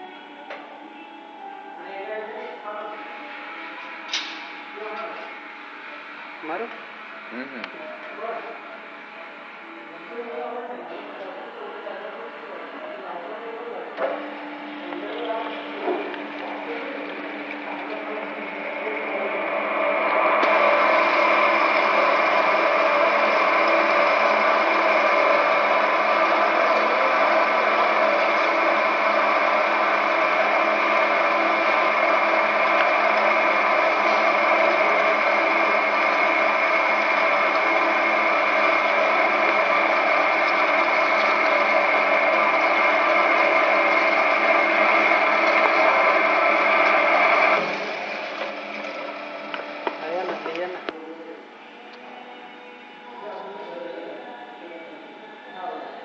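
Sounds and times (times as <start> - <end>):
drilling machine whining and grinding: 0.0 - 56.0.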